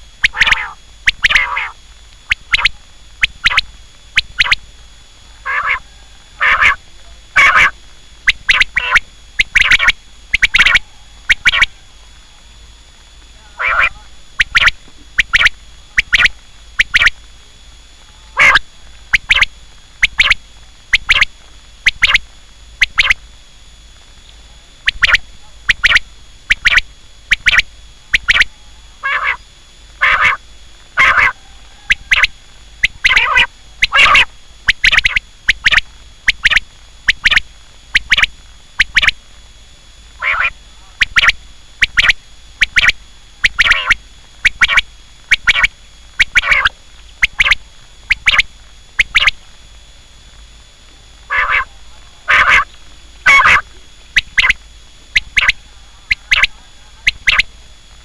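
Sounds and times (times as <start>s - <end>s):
quail calling: 0.2s - 4.6s, 5.3s - 6.8s, 7.4s - 12.0s, 13.4s - 17.2s, 18.2s - 20.4s, 21.9s - 22.2s, 24.8s - 29.4s, 30.0s - 30.4s, 31.0s - 37.4s, 40.2s - 49.4s, 51.3s - 53.6s, 54.2s - 57.5s.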